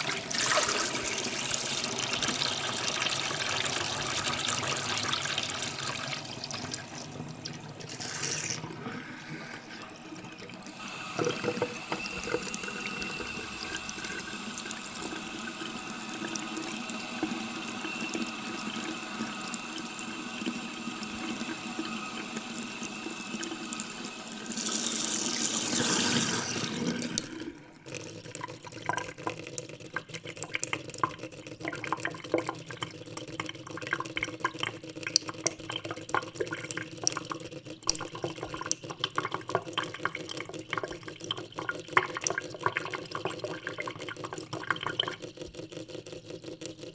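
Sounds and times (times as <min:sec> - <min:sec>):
tap water running into steel sink: 0:00.0 - 0:46.9.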